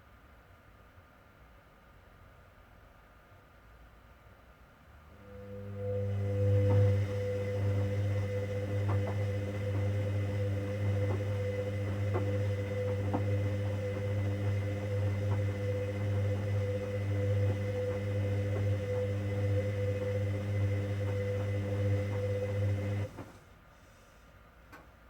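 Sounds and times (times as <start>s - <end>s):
washing machine motor hum: 5.1s - 23.6s.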